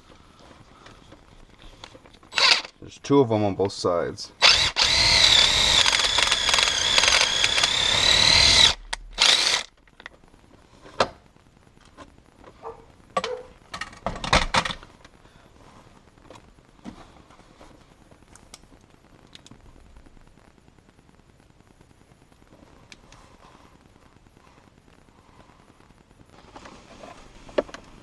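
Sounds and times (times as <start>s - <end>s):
power drill whining: 2.3s - 2.7s, 4.4s - 9.7s.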